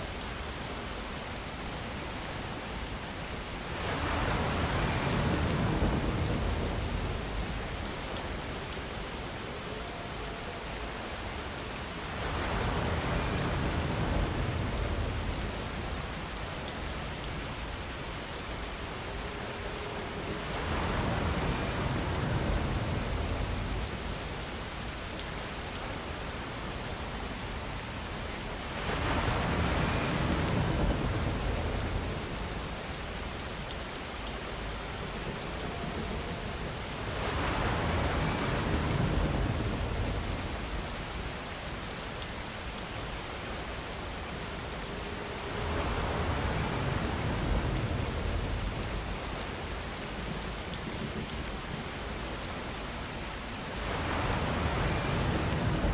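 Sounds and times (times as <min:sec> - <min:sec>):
wind: 0:00.0 - 0:55.9.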